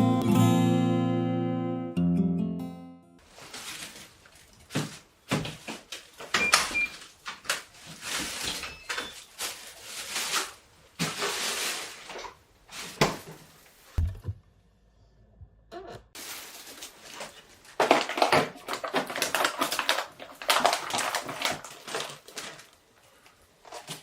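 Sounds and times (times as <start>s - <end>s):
low thump: 14.0s - 14.5s.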